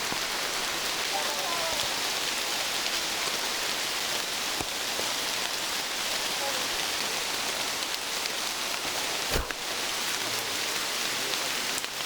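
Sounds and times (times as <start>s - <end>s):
steady rain falling: 0.0s - 12.0s
faint drip-like ticks: 1.5s - 12.0s.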